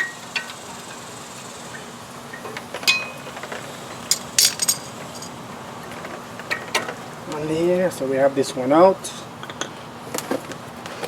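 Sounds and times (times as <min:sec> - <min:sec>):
metal brake parts clinking: 0:04.0 - 0:05.4.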